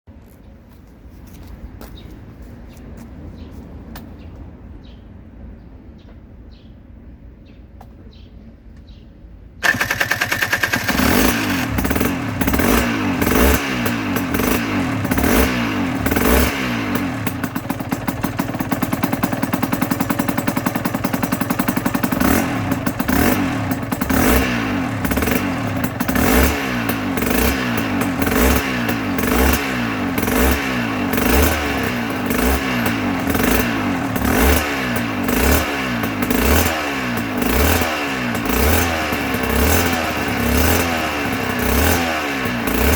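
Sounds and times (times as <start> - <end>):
motorcycle engine revving: 9.6 - 42.9.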